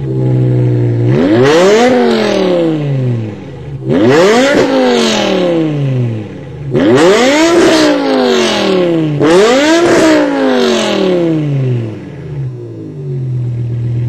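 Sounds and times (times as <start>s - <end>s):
car engine revving and idling: 0.0s - 14.0s.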